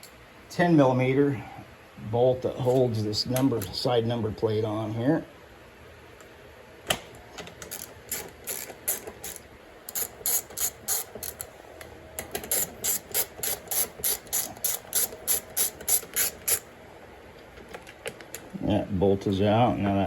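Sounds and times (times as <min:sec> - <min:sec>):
ratchet wrench clicking: 0:07.6 - 0:11.5, 0:12.4 - 0:16.7.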